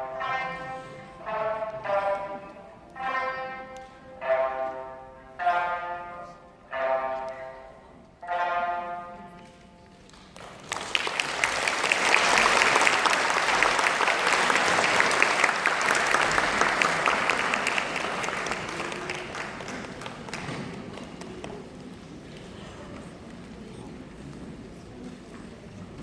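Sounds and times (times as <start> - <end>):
audience applause: 10.3 - 23.0.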